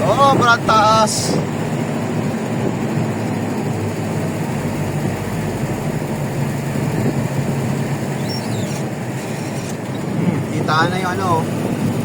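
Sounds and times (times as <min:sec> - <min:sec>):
road noise: 0:00.0 - 0:12.0
vehicle engine running: 0:00.0 - 0:12.0.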